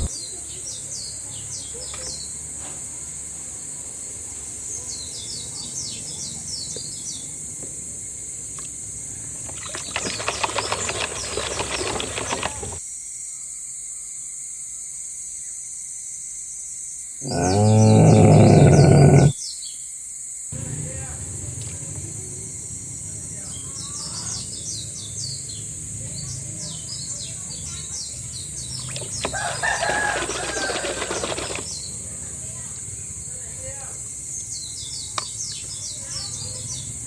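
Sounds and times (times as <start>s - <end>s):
birds chirping: 0.0s - 0.8s, 9.5s - 12.8s, 17.2s - 19.3s, 23.0s - 32.0s
outdoor ambience: 0.0s - 12.8s, 17.2s - 19.4s, 20.5s - 37.0s
loud animal call: 17.2s - 19.4s, 28.9s - 31.7s.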